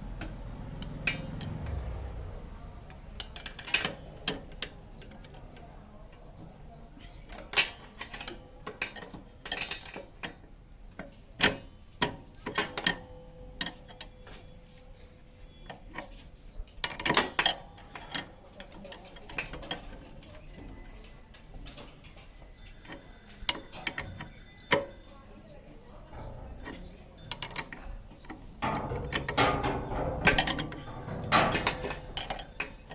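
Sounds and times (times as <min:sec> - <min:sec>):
metal parts clattering: 0:03.2 - 0:05.4, 0:07.1 - 0:10.4, 0:11.0 - 0:14.4, 0:15.6 - 0:25.1, 0:26.0 - 0:32.9
metallic clinks of hand tools: 0:16.8 - 0:32.9.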